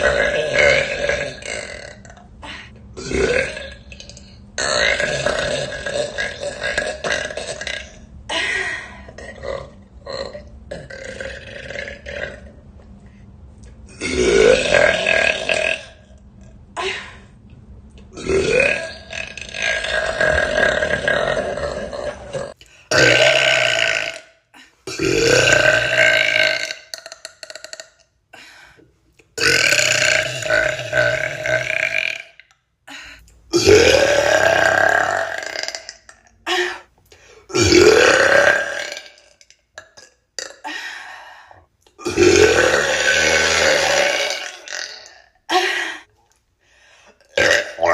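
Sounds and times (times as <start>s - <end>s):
woman burping: 0.0s - 12.5s, 18.2s - 28.5s, 29.4s - 36.9s, 37.5s - 41.0s, 41.9s - 46.1s, 47.2s - 47.9s.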